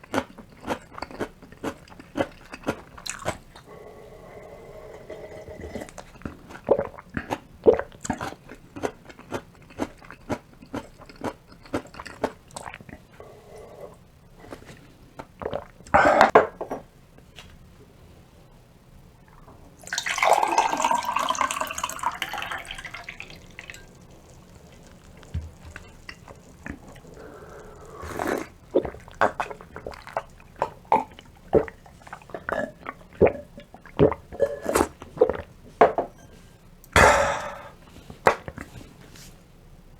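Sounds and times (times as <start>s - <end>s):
liquid slurp: 19.8s - 35.5s.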